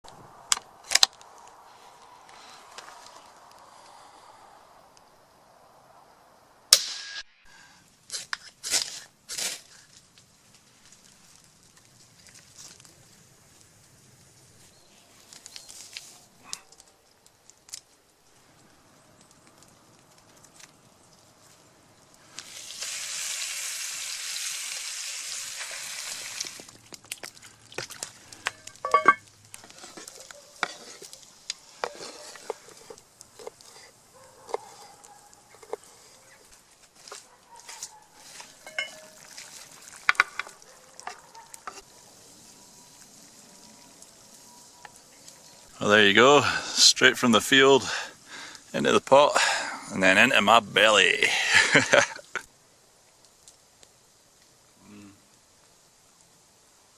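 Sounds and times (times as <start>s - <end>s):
food sizzling in a pan: 22.3s - 26.8s, 38.2s - 40.6s, 41.6s - 45.7s
utensil clinking on metal pot: 28.4s - 29.2s, 38.6s - 39.3s.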